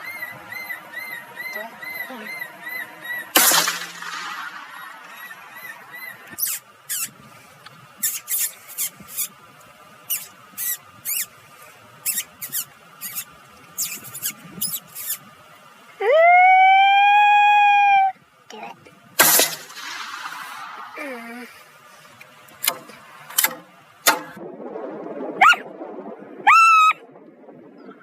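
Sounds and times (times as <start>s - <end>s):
loud steady tone: 0.0s - 6.4s
short high squeaks: 0.0s - 7.3s, 8.0s - 9.4s, 10.1s - 11.4s, 12.0s - 15.3s
sharp bang with ringing tail: 2.7s - 6.4s, 19.2s - 21.1s.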